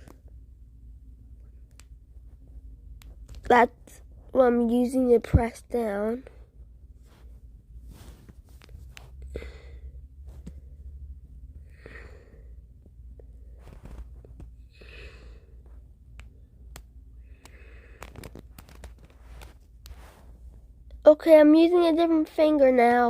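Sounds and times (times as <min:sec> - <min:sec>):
faint low hum: 0:00.0 - 0:23.0
person breathing out: 0:09.3 - 0:10.8, 0:11.6 - 0:12.6, 0:14.7 - 0:15.6, 0:17.2 - 0:18.3.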